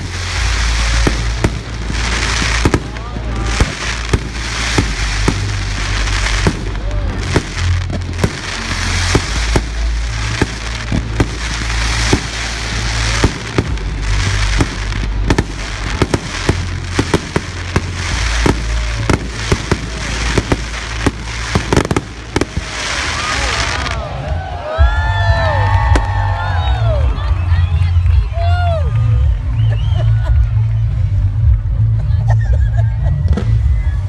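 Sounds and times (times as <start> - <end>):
fireworks whistles: 0.0 - 24.0
fireworks bangs and booms: 0.0 - 27.4
fireworks crackling: 0.0 - 31.9.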